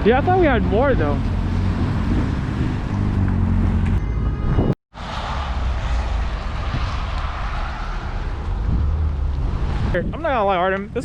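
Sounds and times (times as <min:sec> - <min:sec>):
car engine droning: 0:00.0 - 0:10.1
wind noise: 0:01.0 - 0:11.0.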